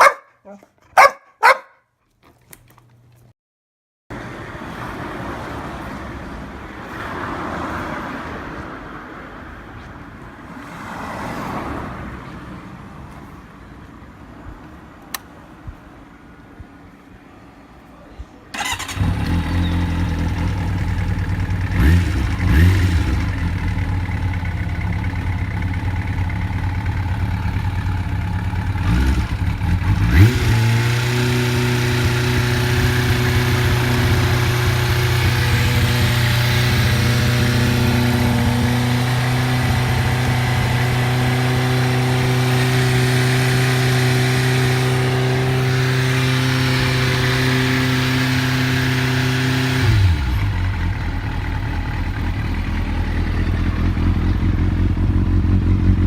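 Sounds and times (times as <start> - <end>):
motorcycle engine idling: 18.6 - 30.0, 50.3 - 56.0.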